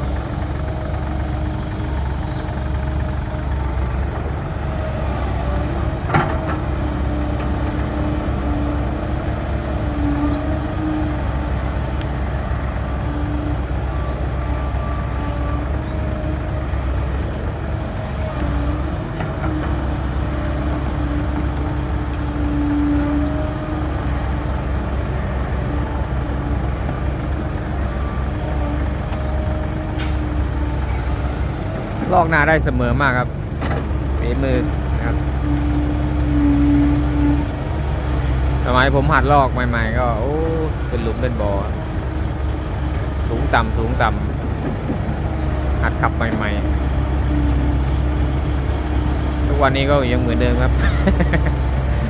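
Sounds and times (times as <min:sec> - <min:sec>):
heavy diesel engine running: 0:00.0 - 0:52.0.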